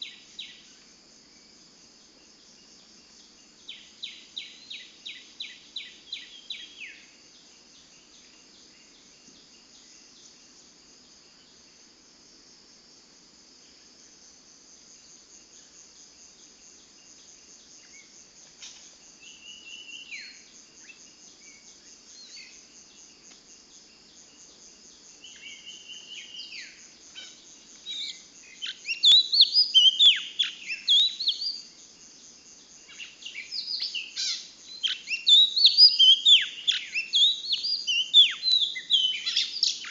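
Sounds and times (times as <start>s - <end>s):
songbird chirping: 0.0s - 10.4s, 15.6s - 31.8s, 32.4s - 39.9s
high insect chirring: 14.4s - 39.9s.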